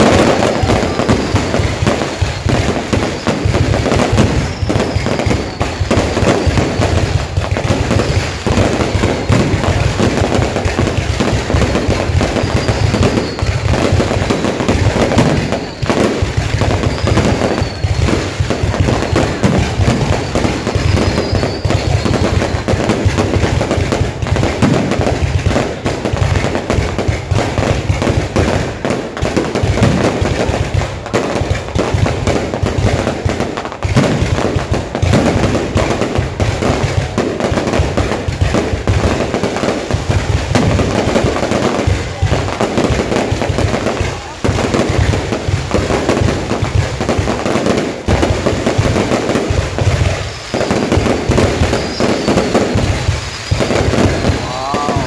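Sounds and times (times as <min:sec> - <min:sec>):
faint firework whistles: 0:00.0 - 0:29.0, 0:47.6 - 0:55.0
fireworks crackling and banging: 0:00.0 - 0:55.0.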